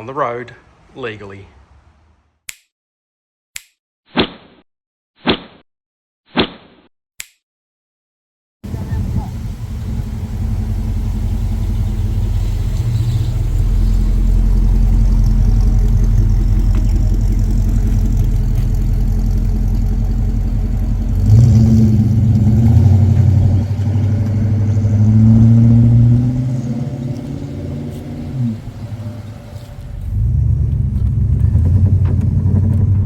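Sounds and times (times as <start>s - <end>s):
car engine accelerating: 8.6s - 33.0s.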